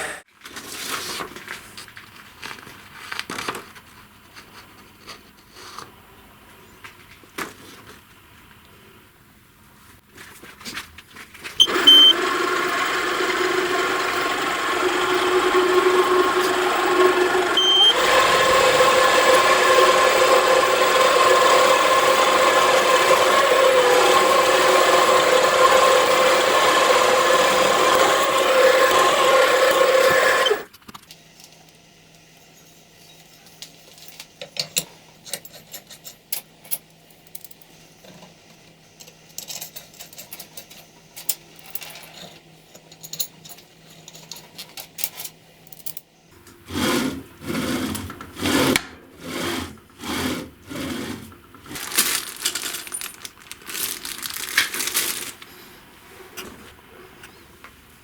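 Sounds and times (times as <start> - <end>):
electric power tool running: 11.6 - 30.7.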